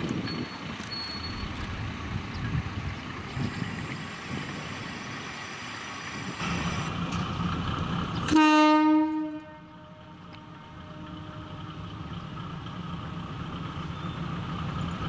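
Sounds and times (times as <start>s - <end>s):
diesel railcar rumble: 0.0s - 15.0s
train horn blast: 8.3s - 11.7s.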